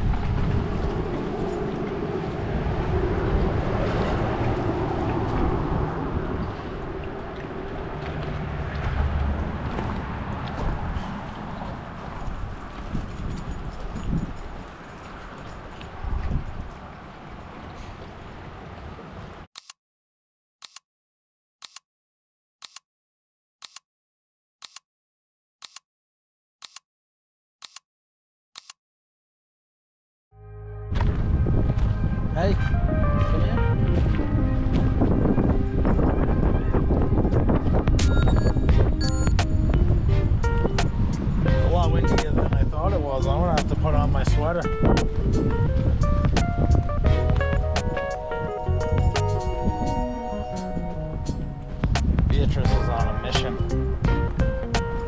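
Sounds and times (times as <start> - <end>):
wind buffeting microphone: 0.0 - 18.8, 30.9 - 55.0
steady outdoor noise: 0.0 - 19.5, 30.8 - 55.0
low hum: 30.4 - 36.6.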